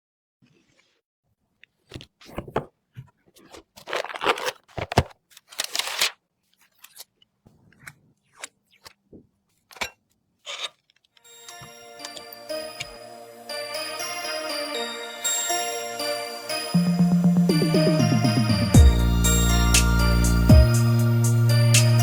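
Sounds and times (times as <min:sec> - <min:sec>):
packaging crunching and rustling: 0:01.8 - 0:07.2.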